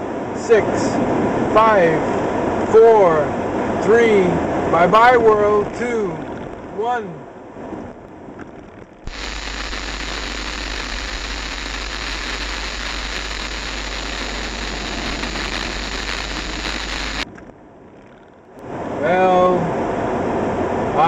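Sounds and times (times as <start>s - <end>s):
loud white noise hiss: 9.0s - 17.3s.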